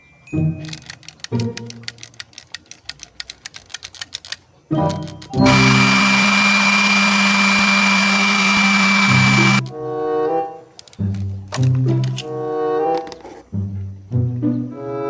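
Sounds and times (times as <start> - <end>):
toy power tool rapid clicking: 5.2 - 9.7
toy motor buzz: 5.4 - 9.6.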